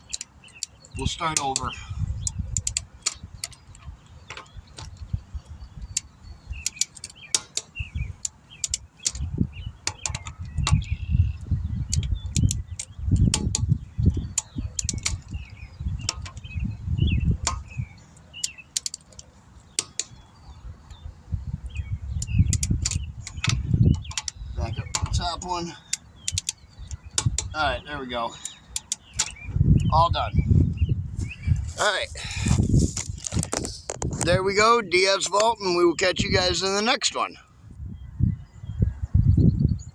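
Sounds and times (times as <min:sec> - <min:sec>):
torque wrench clicking: 0:00.0 - 0:05.1, 0:05.9 - 0:11.0, 0:11.9 - 0:16.5, 0:18.4 - 0:20.2, 0:22.2 - 0:27.6, 0:28.4 - 0:29.4
birds chirping faintly: 0:00.0 - 0:39.9.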